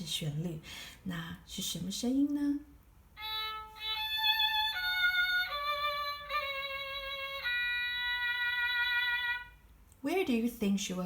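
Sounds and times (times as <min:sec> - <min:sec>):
bowed violin phrase: 0:03.2 - 0:09.6.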